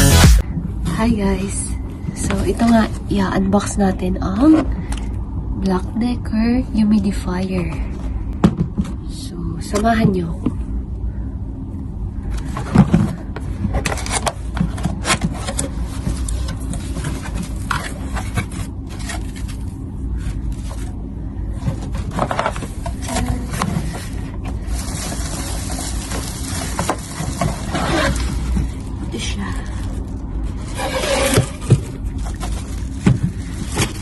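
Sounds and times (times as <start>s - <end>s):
steady low hum: 0.0s - 34.0s
cardboard box scraping and rubbing: 26.8s - 28.6s, 30.5s - 32.7s.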